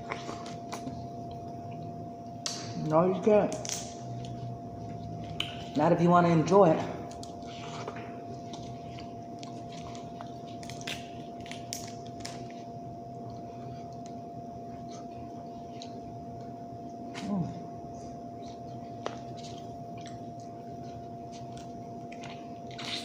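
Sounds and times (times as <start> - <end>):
person chewing food: 0.0 - 2.6, 3.2 - 5.8, 7.0 - 23.0
steady electrical whine: 0.0 - 23.0
wet mouth clicks and smacks: 5.3 - 5.7.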